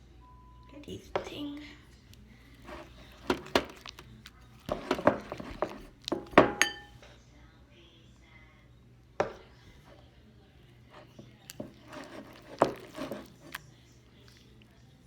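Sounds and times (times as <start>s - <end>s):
utensil clinking against mixing bowl: 2.1s - 7.0s, 10.9s - 14.7s.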